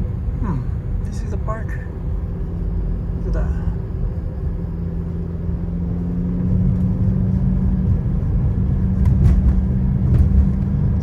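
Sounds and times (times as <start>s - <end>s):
car engine and road noise: 0.0s - 11.0s.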